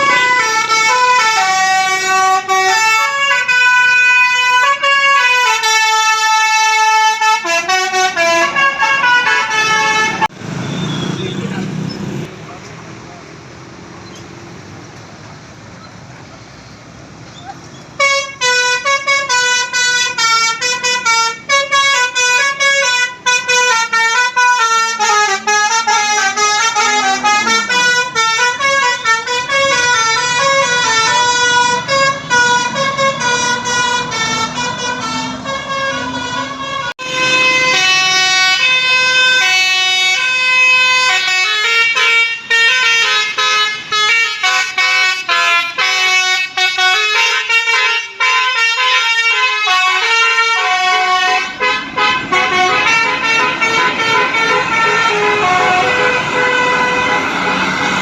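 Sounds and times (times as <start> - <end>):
faint traffic noise: 0.0 - 58.0
musical air horn tune: 18.0 - 40.3, 41.1 - 57.9.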